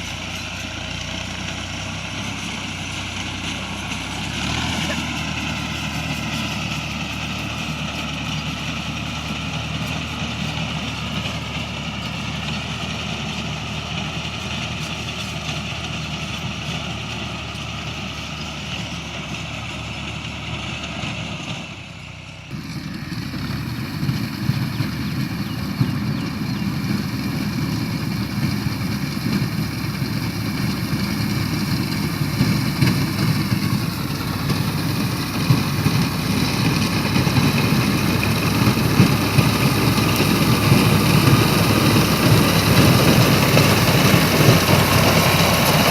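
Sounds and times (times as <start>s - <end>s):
deep loud engine: 0.0s - 45.9s
machinery engine running: 0.0s - 45.9s.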